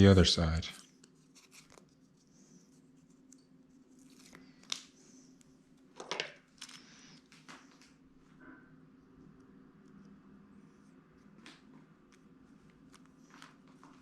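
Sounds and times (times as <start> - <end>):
sticker being peeled: 1.0 - 2.2.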